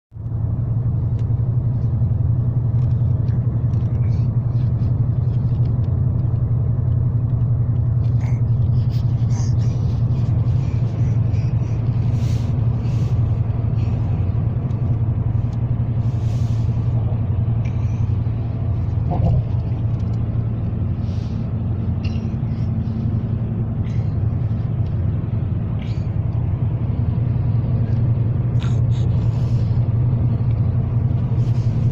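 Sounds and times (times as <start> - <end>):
car road and engine noise: 0.1 - 31.9
baby vocalizing: 8.0 - 12.4, 28.6 - 29.3.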